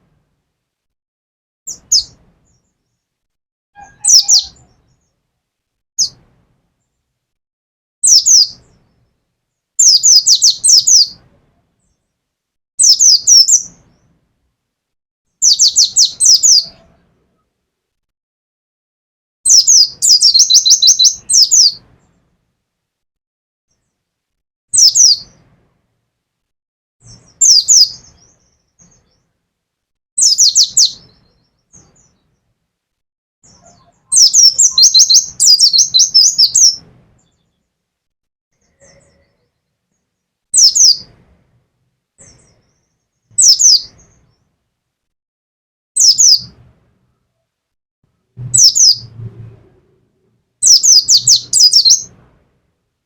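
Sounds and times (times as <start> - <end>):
songbird chirping: 1.7 - 3.1, 3.8 - 5.4, 6.0 - 7.2, 8.0 - 14.2, 15.4 - 17.6, 19.4 - 22.4, 24.7 - 25.6, 27.0 - 29.4, 30.2 - 32.6, 33.4 - 37.8, 38.6 - 41.3, 42.2 - 44.5, 46.0 - 47.4, 48.4 - 49.5, 50.2 - 52.2.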